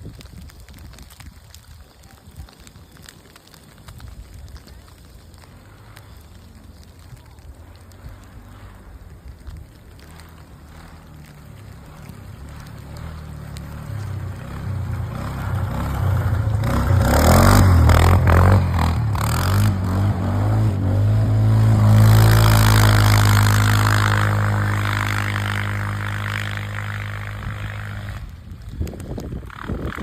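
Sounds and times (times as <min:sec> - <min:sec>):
tyres sliding on loose ground: 0:00.0 - 0:20.3
quad bike engine revving: 0:11.8 - 0:28.4.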